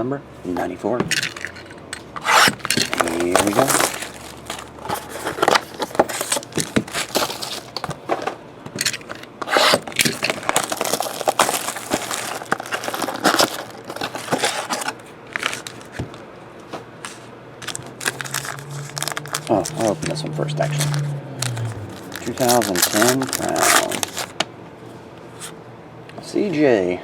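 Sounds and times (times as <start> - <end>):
shrink-wrap tearing and crinkling: 1.2 - 8.1, 8.9 - 16.0, 17.6 - 24.4.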